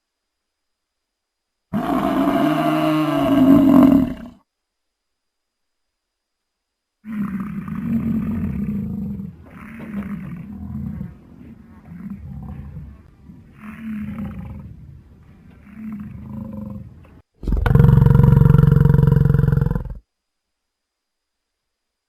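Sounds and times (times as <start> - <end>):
deep throaty dinosaur roars: 1.8 - 4.4, 7.0 - 20.0
dinosaur growls: 1.8 - 4.4, 7.0 - 20.0.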